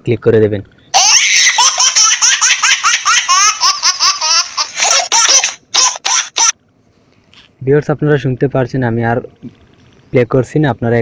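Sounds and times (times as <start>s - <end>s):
high-pitched giggling sound effect: 1.0s - 6.6s.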